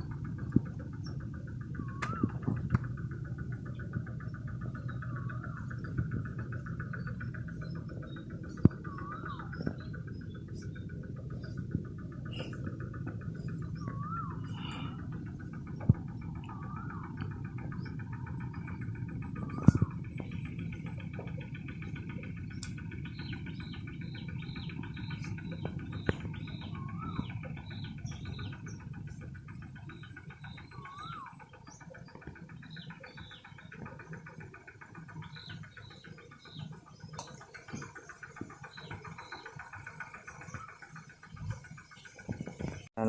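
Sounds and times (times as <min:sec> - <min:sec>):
low rumble: 0:00.0 - 0:31.3
birds chirping: 0:00.0 - 0:43.0
steady high drone: 0:00.0 - 0:43.0
whistled bird notes: 0:00.3 - 0:42.8.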